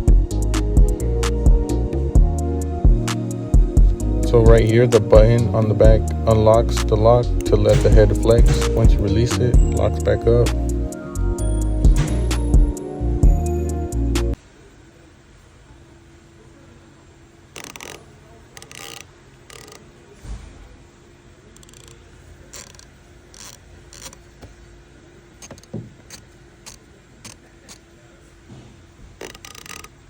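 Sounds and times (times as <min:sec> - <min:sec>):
ratchet clicking: 0:03.0 - 0:12.8, 0:17.5 - 0:20.0, 0:21.5 - 0:24.4, 0:25.4 - 0:27.9, 0:29.2 - 0:30.0.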